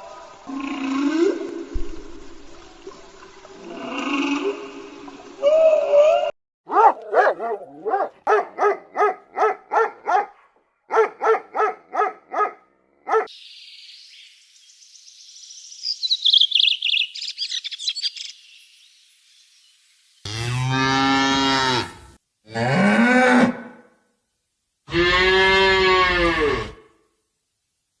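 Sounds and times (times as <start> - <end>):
steady hiss: 13.3 - 16.2, 17.1 - 20.2
high chirps: 13.3 - 18.9
cow mooing: 20.3 - 23.7, 24.9 - 26.8.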